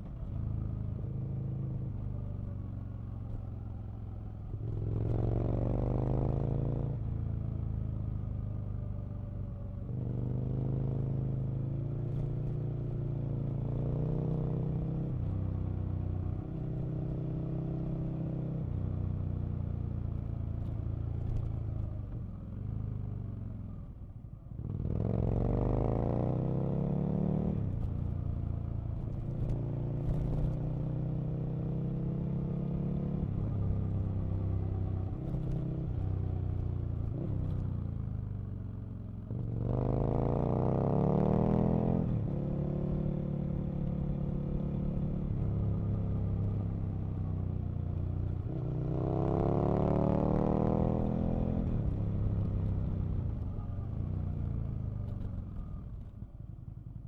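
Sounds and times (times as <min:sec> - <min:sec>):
motorcycle engine revving: 0:48.4 - 0:53.2.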